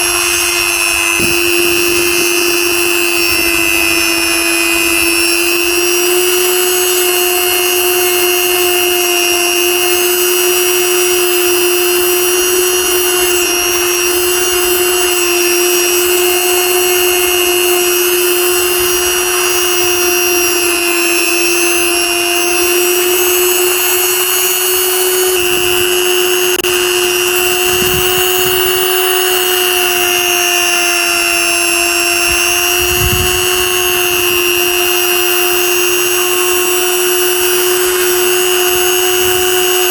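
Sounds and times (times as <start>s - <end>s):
electric power tool motor whine: 0.0s - 39.9s
low bumps: 31.3s - 39.8s.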